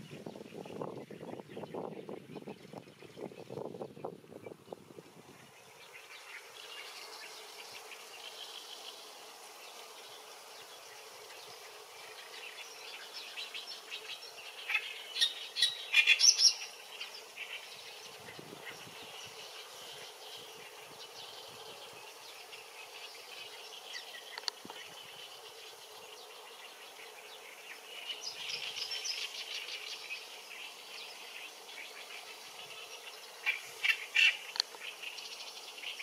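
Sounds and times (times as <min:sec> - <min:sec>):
insect-like chirring: 0:22.5 - 0:25.8, 0:27.5 - 0:36.0.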